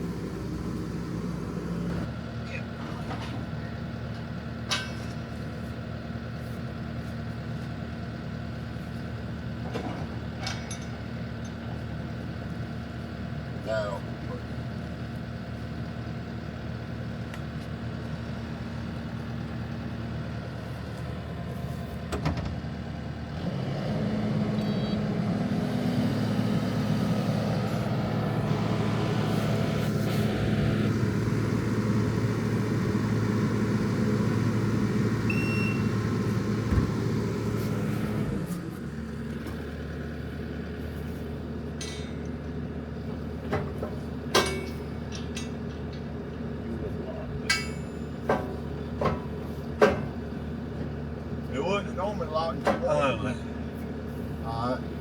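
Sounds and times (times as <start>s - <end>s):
heavy vehicle engine revving: 0.0s - 2.1s, 23.0s - 40.8s.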